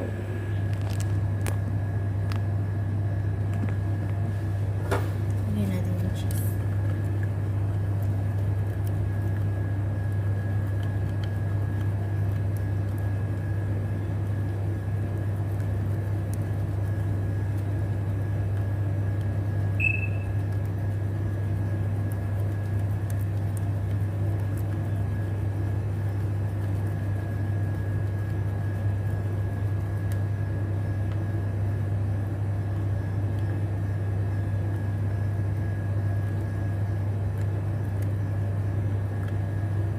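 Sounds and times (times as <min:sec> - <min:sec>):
low machine hum: 0:00.0 - 0:39.9
short high chirp: 0:19.8 - 0:20.3.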